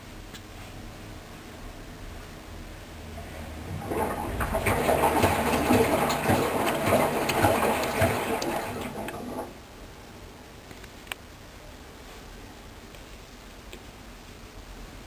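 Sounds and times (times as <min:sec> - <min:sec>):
washing machine drum churning: 0:03.0 - 0:09.6
knocks in washing machine: 0:03.7 - 0:09.3.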